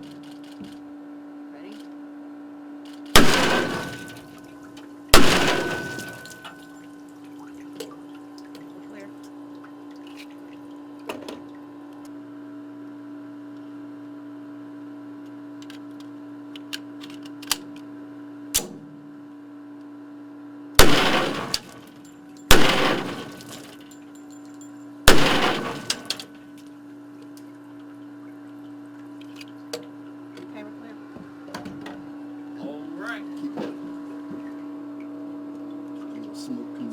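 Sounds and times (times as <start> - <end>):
gunshots ringing in a room: 3.1 - 4.5, 5.1 - 6.8, 20.8 - 23.9, 25.1 - 26.4
steady hum: 3.2 - 6.9, 20.8 - 26.4.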